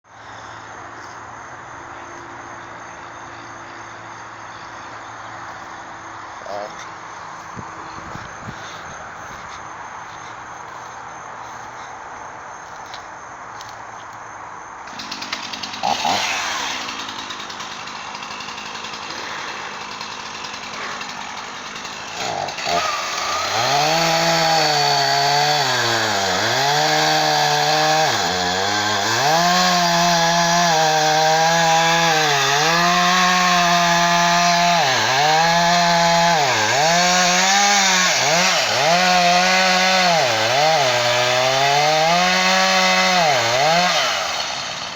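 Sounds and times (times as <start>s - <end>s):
two-stroke chainsaw running: 5.4s - 9.4s, 14.8s - 44.9s.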